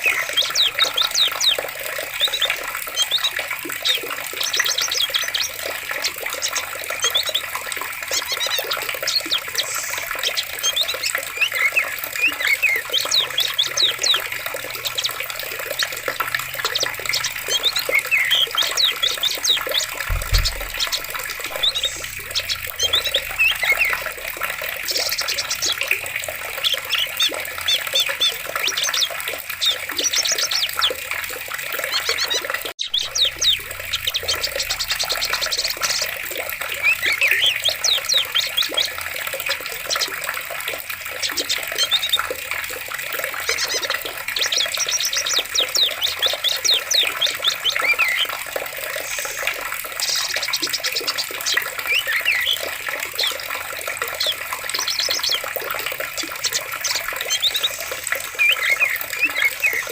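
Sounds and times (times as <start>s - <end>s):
small birds chirping: 0.0s - 42.4s, 43.1s - 59.9s
running water rushing: 0.0s - 59.9s
low thump: 20.1s - 21.8s.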